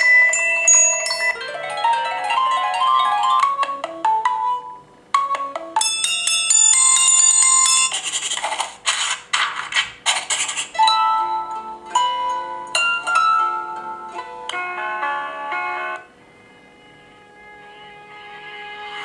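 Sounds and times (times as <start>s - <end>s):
electronic ringtone tunes: 0.0s - 8.0s, 10.8s - 16.4s.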